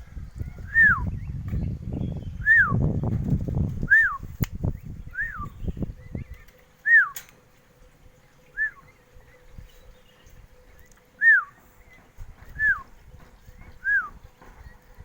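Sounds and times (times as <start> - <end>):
low rumbling noise: 0.0 - 15.0.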